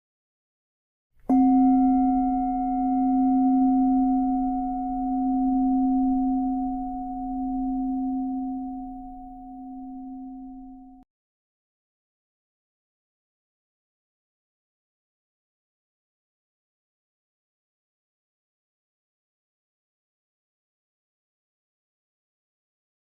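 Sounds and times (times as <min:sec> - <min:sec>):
meditation bell ringing: 0:01.3 - 0:11.0.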